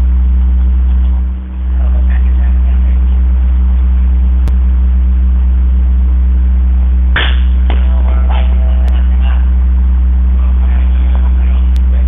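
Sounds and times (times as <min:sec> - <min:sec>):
loud electrical hum: 0:00.0 - 0:12.0
sharp crack: 0:07.1 - 0:07.9.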